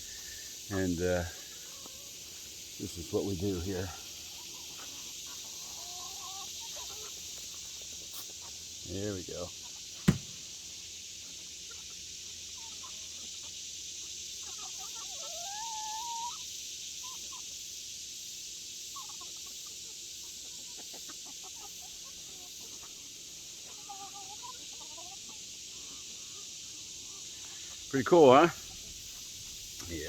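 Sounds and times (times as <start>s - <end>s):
steady high hiss: 0.0s - 5.5s, 6.4s - 11.5s, 25.4s - 30.0s
hens clucking softly: 3.6s - 8.3s, 11.6s - 17.5s, 18.9s - 27.8s.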